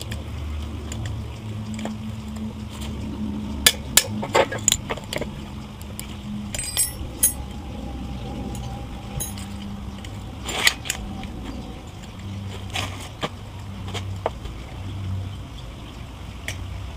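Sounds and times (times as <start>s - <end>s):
steady low hum: 0.0s - 16.9s
ringing metal clinks: 6.5s - 7.5s, 9.2s - 9.6s
metal parts knocking: 6.6s - 7.4s.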